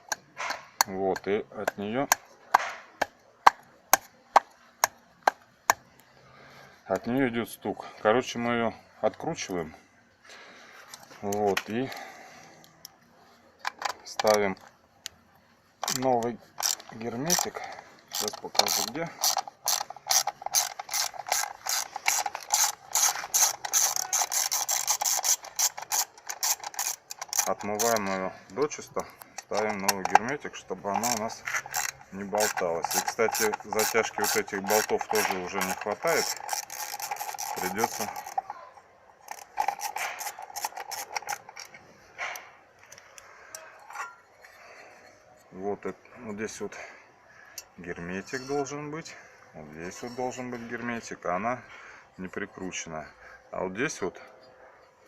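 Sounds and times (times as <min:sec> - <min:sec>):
ratchet wrench clicking: 0:15.8 - 0:38.6, 0:39.2 - 0:41.8.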